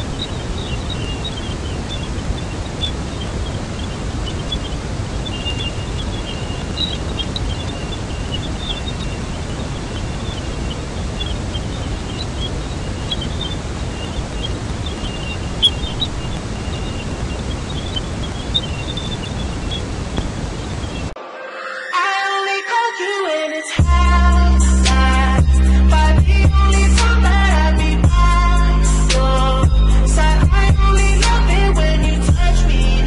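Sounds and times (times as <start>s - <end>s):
steady deep hiss: 0.0s - 21.2s, 23.8s - 33.0s
high chirps: 0.0s - 27.3s.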